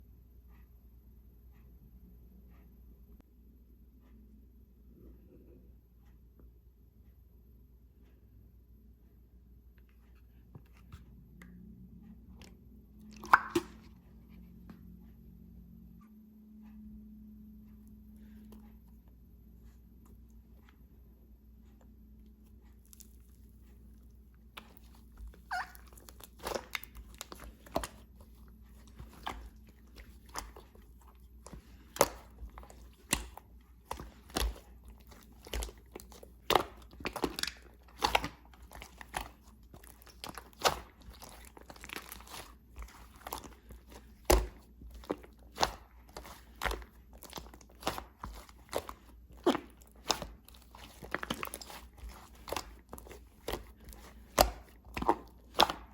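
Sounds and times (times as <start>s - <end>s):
slime squished by hand: 12.4s - 14.0s, 24.5s - 55.9s.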